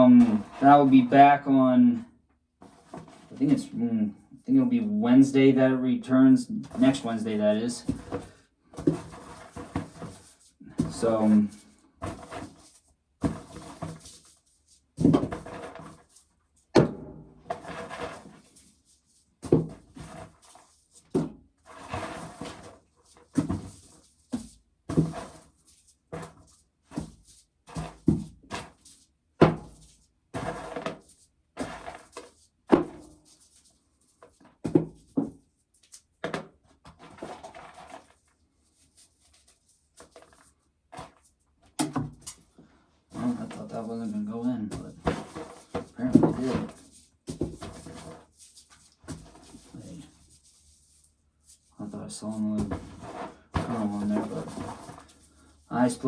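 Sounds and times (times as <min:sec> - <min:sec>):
corn kernels clattering into pail: 0:10.8 - 0:12.6, 0:43.1 - 0:48.2, 0:51.8 - 0:55.1.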